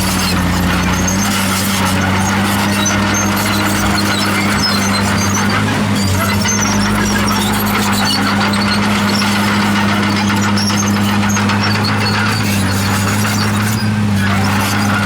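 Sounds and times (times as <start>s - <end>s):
diesel engine running: 0.0s - 15.0s
short high squeaks: 0.0s - 15.0s.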